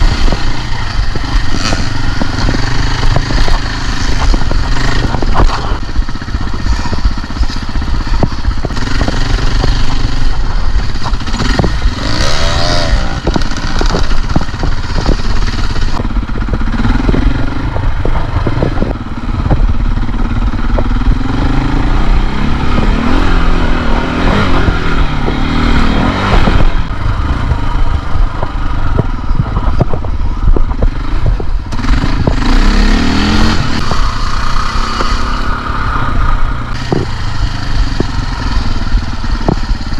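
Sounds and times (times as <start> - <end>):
knocks and clatter: 0.0 - 19.9
dirt bike engine revving: 0.0 - 39.9.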